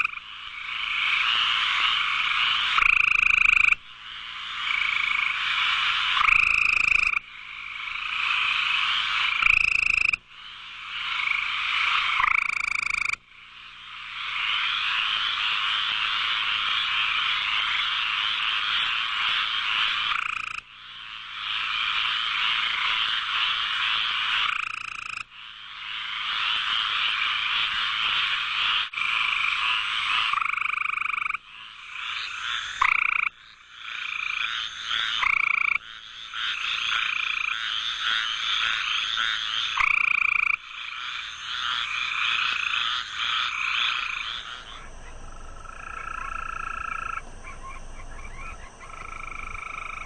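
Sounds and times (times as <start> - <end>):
frogs croaking: 0.0 - 50.0.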